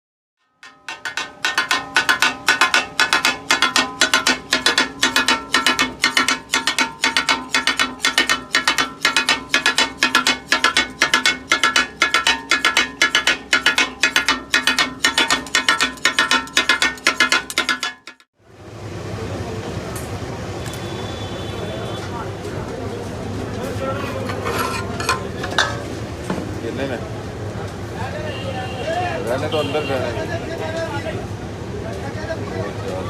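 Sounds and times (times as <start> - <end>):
steel spatulas clattering on griddle: 0.4 - 18.3, 23.6 - 26.4.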